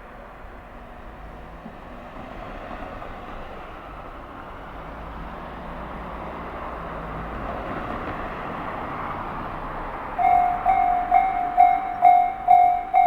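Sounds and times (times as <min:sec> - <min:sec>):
rushing rail noise: 0:00.0 - 0:13.0
level-crossing warning bell: 0:10.2 - 0:13.0.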